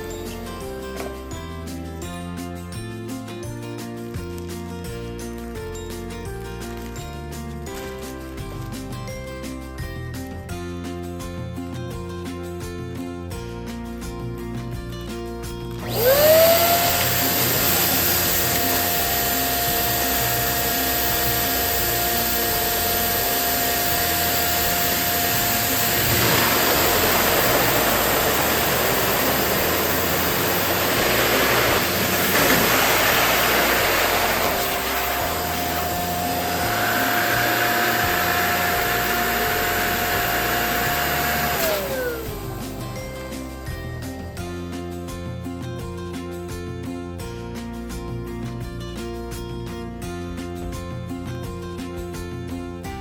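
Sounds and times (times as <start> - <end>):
balloon inflator motor whine: 15.8 - 43.2.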